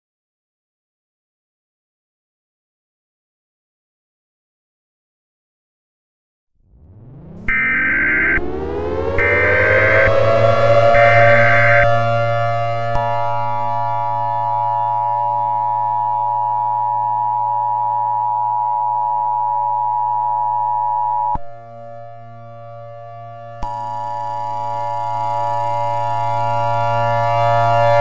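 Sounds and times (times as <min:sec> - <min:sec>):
electronic siren-like alert tone: 0:06.6 - 0:28.0
low hum: 0:06.6 - 0:28.0
quiet drone: 0:06.7 - 0:28.0
short high pulsing beep: 0:07.5 - 0:08.5, 0:09.2 - 0:10.3, 0:10.9 - 0:11.9.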